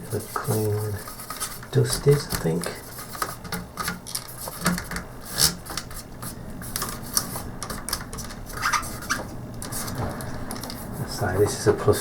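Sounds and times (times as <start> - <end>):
scraping strokes: 0.0 - 3.4.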